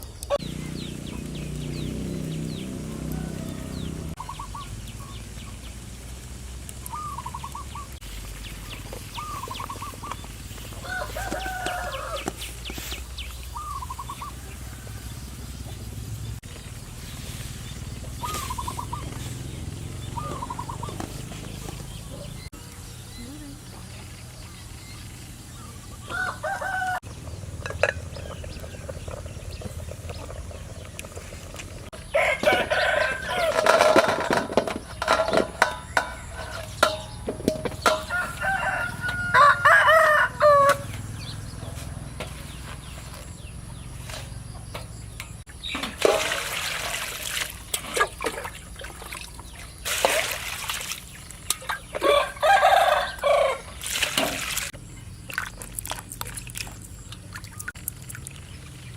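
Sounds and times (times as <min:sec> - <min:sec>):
rooster crowing: 0:02.3 - 0:04.2, 0:10.8 - 0:12.4, 0:14.0 - 0:15.8, 0:26.1 - 0:27.1, 0:32.0 - 0:34.0, 0:37.8 - 0:41.1, 0:52.0 - 0:53.8
hens clucking: 0:17.4 - 0:22.5.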